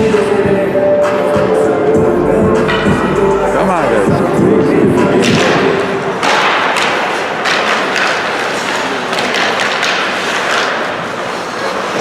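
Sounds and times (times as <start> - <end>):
arena music: 0.0 - 8.7
arena noise: 0.0 - 12.0
puck and sticks hitting boards: 2.7 - 3.0, 4.7 - 12.0
skates scraping ice: 4.8 - 12.0.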